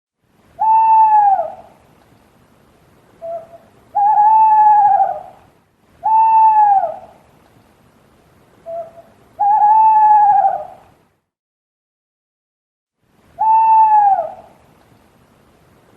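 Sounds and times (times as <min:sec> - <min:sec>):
owl hooting: 0:00.6 - 0:01.8, 0:03.2 - 0:07.2, 0:08.6 - 0:10.9, 0:13.4 - 0:14.6.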